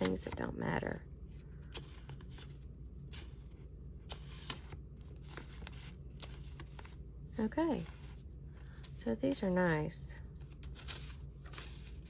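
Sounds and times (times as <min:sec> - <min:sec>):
paper rustling and sliding: 0:04.1 - 0:07.0, 0:10.5 - 0:12.0.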